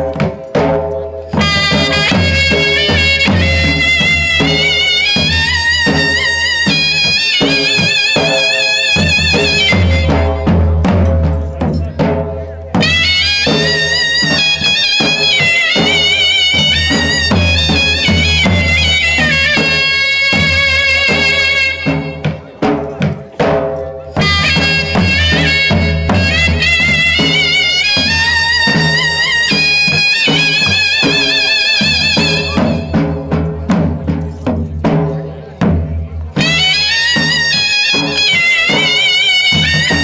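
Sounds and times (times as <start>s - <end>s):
drumbeats: 0.0s - 40.0s.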